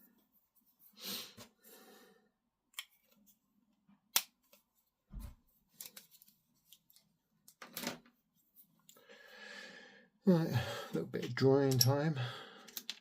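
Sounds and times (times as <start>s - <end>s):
tools clicking and tapping: 11.2s - 12.1s, 12.7s - 13.0s.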